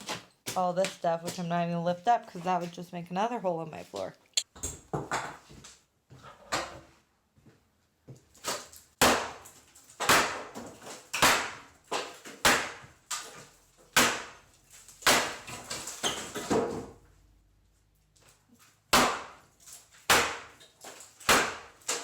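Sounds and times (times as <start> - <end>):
demolition tool hitting wall: 9.0 - 14.4, 15.0 - 16.9, 18.9 - 22.0.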